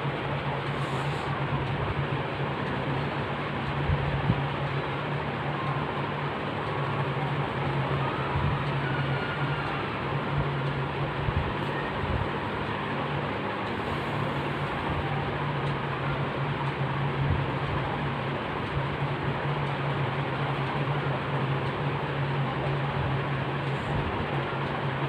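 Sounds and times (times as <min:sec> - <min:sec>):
steady hiss: 0:00.5 - 0:01.5.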